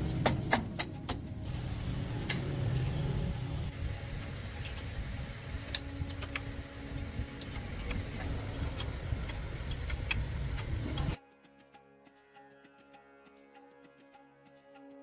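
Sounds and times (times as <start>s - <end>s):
sharp clicks and knocks: 0.0s - 1.3s.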